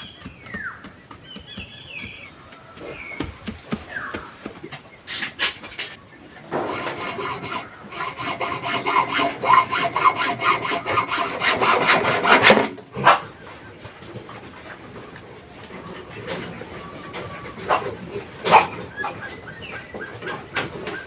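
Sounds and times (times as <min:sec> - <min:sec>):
hand saw cutting wood: 0:05.1 - 0:13.2.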